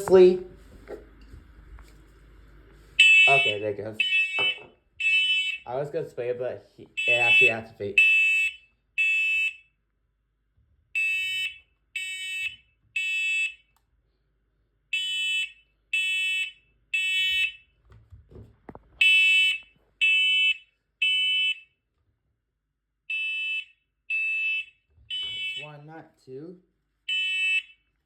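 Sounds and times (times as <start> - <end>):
smoke alarm beeping: 3.0 - 5.7, 6.9 - 9.8, 11.0 - 13.8, 14.9 - 17.8, 19.0 - 21.8, 23.1 - 25.8, 27.1 - 27.9.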